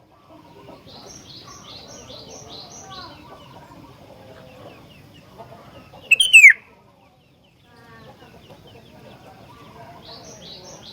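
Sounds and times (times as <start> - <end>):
faint bird chatter: 0.0 - 10.9
bird call sliding down in pitch: 6.1 - 6.6.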